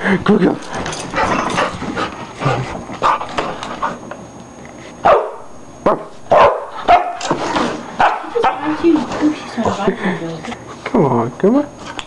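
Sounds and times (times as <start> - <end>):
dog barking: 5.0 - 5.4, 6.3 - 7.3, 8.0 - 8.6.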